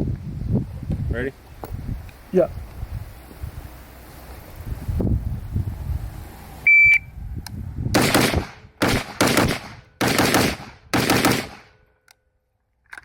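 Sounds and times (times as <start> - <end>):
shot timer beep: 6.7 - 7.1
gunshots with ringing tail: 8.0 - 11.8.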